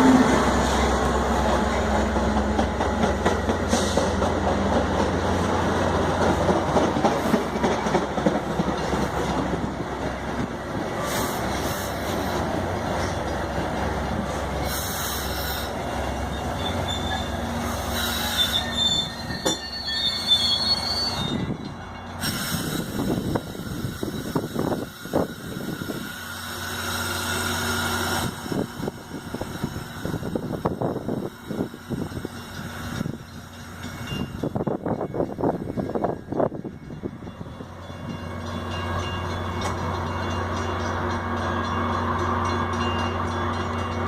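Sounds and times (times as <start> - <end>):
rumble of wheels on rail: 0.0 - 44.0
high wheel squeals: 14.6 - 27.9.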